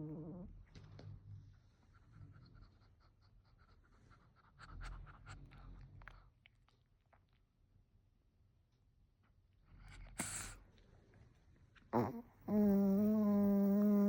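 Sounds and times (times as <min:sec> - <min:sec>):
small clicks and snuffles: 0:00.7 - 0:07.6, 0:09.7 - 0:11.9
dog snoring: 0:11.9 - 0:14.0.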